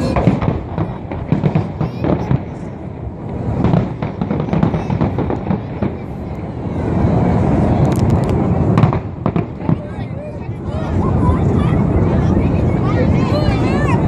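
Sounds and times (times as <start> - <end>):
fireworks exploding: 0.0 - 14.0.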